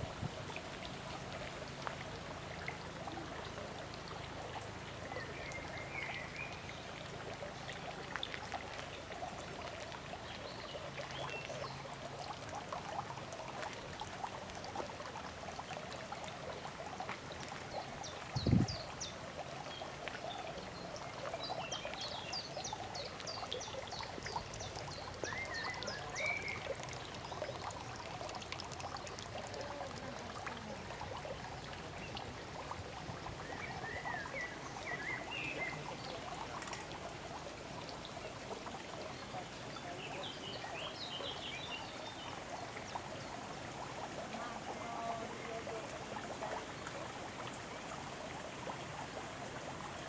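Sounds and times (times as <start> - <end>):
small waterfall into pond: 0.0 - 50.0.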